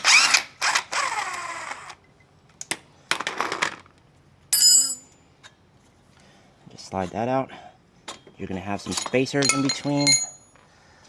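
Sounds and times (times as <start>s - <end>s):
ringing metal clink: 4.5s - 5.2s, 9.0s - 10.6s.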